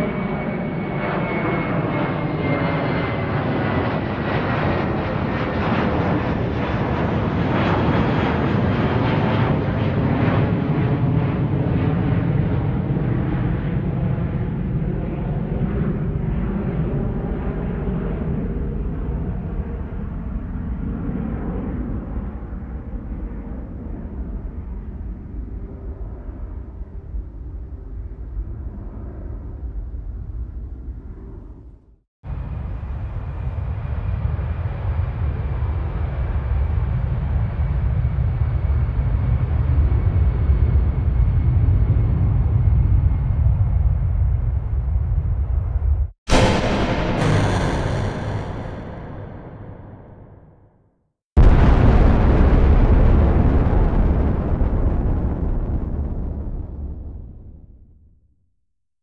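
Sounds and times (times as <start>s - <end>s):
loud low rumble: 46.3s - 50.7s.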